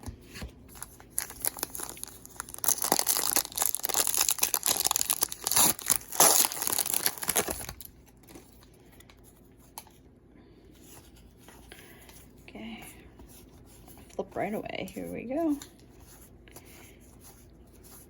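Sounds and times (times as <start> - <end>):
wrapper tearing and crinkling: 0.8 - 8.5.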